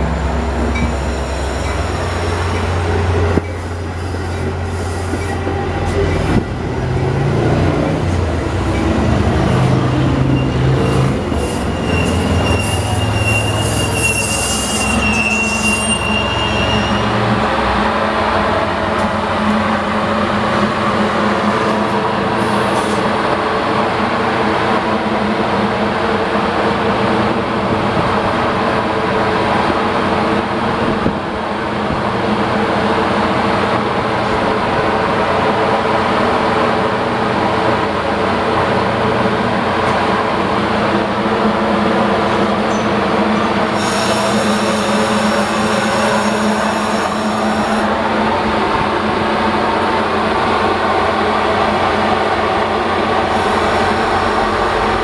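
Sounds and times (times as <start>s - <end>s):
diesel locomotive humming: 0.0s - 55.0s
thin high squeal: 11.5s - 17.1s.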